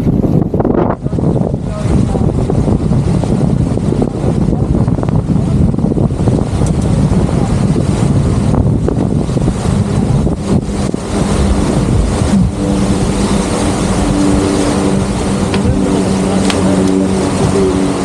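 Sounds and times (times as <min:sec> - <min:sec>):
water rushing past boat: 0:00.0 - 0:18.0
wind buffeting microphone: 0:00.0 - 0:18.0
low uneven hum: 0:07.4 - 0:18.0.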